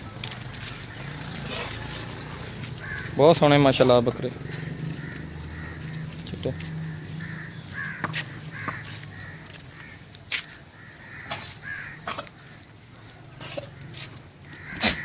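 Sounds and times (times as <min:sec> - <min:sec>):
crows cawing: 0:00.7 - 0:15.0
sharp knocks: 0:08.0 - 0:08.8.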